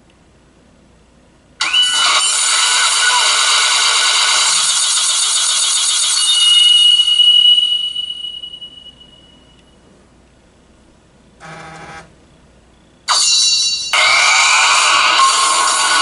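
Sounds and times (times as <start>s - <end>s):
bright ringing chime: 6.0s - 9.8s, 13.1s - 14.1s.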